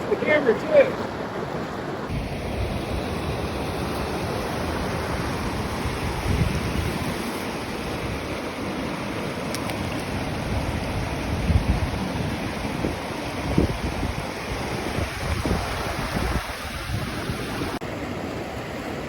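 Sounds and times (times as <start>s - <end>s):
wind gusting on microphone: 0.0s - 17.8s
river water rushing over rapids: 0.0s - 19.0s.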